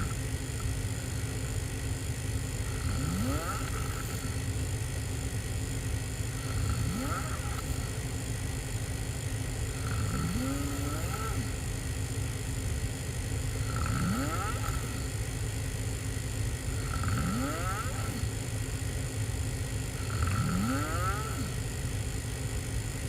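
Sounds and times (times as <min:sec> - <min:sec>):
person snoring: 0:00.0 - 0:01.6, 0:02.6 - 0:04.5, 0:06.2 - 0:08.1, 0:09.7 - 0:11.6, 0:13.5 - 0:15.2, 0:16.7 - 0:18.4, 0:19.9 - 0:21.7.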